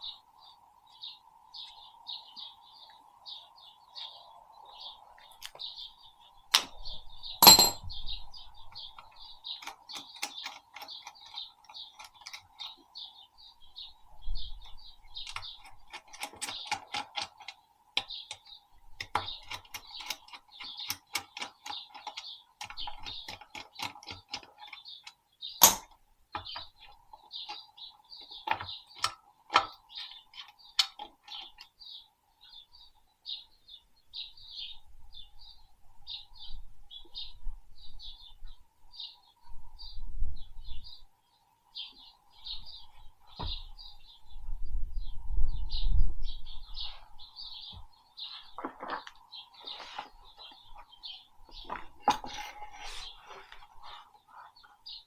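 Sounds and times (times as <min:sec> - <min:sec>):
small birds chirping: 0:00.0 - 0:55.0
sharp clicks and knocks: 0:15.2 - 0:26.8.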